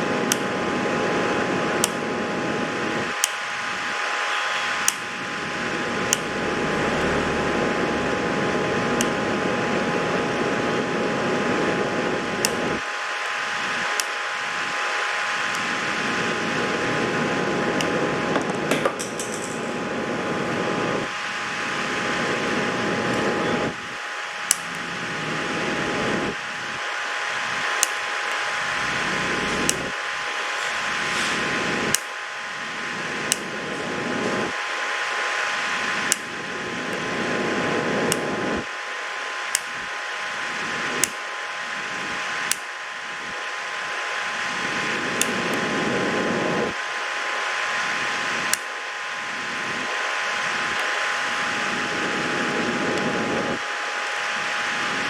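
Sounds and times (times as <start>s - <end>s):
fan whir: 0.0s - 55.0s
sharp clicks: 0.3s - 0.5s, 1.8s - 2.0s, 3.1s - 3.4s, 4.8s - 5.1s, 6.1s - 6.3s, 13.9s - 14.2s, 24.4s - 24.8s, 27.7s - 28.4s, 31.8s - 32.2s, 33.2s - 33.6s, 36.0s - 37.0s, 38.0s - 38.4s, 39.5s - 39.9s, 41.0s - 41.2s, 42.4s - 42.7s, 48.4s - 48.8s.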